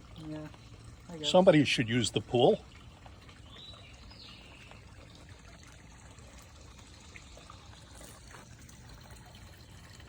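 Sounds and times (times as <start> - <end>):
water trickling in pool: 0.0 - 10.0.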